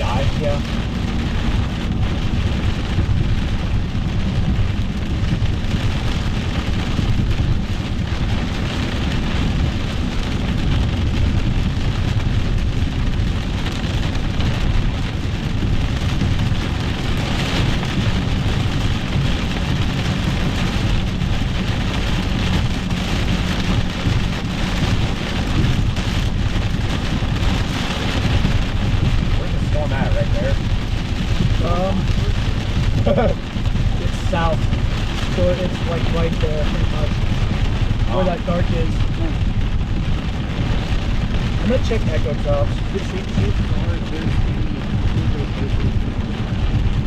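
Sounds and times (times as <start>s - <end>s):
heavy rain on car roof: 0.0s - 47.0s
road and tyre noise: 0.0s - 47.0s.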